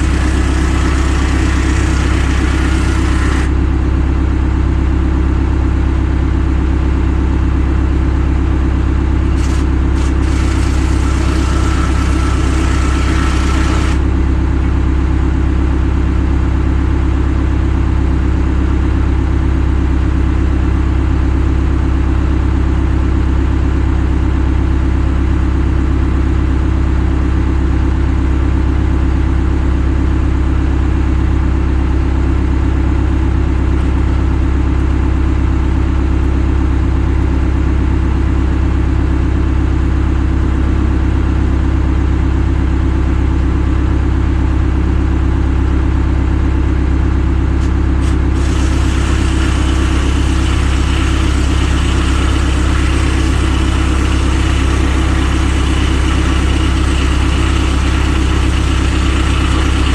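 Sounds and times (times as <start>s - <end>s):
engine droning: 0.0s - 4.6s, 47.5s - 59.9s.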